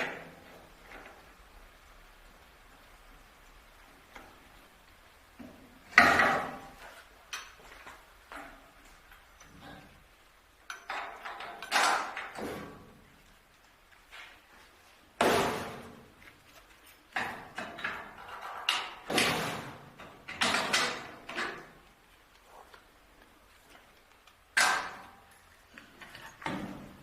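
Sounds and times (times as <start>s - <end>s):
metallic knocks and clangs: 5.4s - 8.8s, 9.4s - 13.0s, 16.8s - 21.8s, 24.5s - 27.0s.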